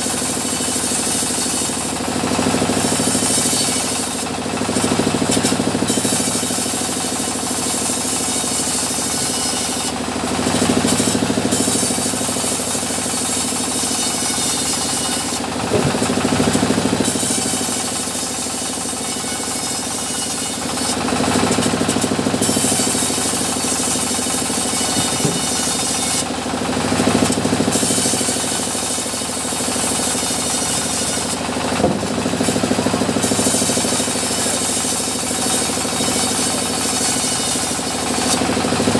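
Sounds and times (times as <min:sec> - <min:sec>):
saw hissing: 0:00.0 - 0:26.4, 0:27.6 - 0:38.5
motor hum: 0:14.4 - 0:18.6, 0:21.0 - 0:27.8.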